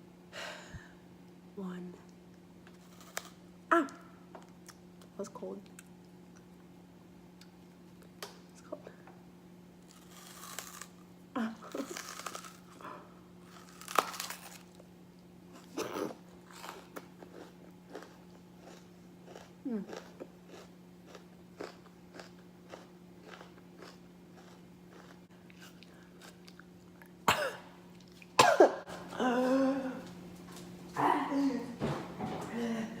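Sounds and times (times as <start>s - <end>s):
person chewing crunchy onion: 2.7s - 3.4s, 9.9s - 11.0s, 11.7s - 14.9s, 15.5s - 27.2s
person coughing: 27.3s - 27.7s, 28.4s - 30.0s, 31.0s - 31.8s.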